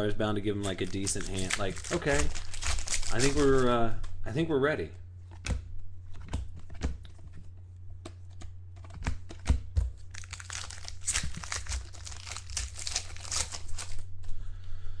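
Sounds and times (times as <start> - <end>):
low electrical hum: 0.0 - 15.0
card pack wrappers crinkling: 0.4 - 4.0, 10.0 - 14.1.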